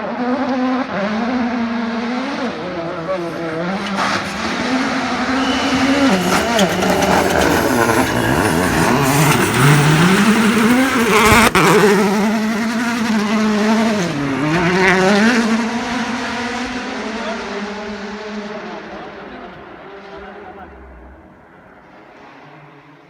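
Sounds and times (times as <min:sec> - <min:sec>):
rally car engine revving: 0:00.0 - 0:23.0
sharp bang: 0:03.2 - 0:12.0.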